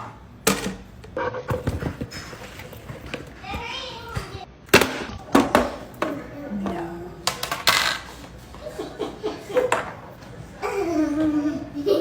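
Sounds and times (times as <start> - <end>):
hard objects clicking and clattering: 0.0 - 6.3, 7.3 - 8.1.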